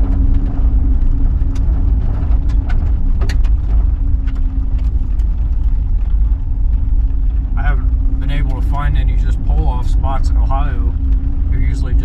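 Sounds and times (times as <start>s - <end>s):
knocks and rattles: 0.0s - 8.6s
van engine and road rumble: 0.0s - 12.0s.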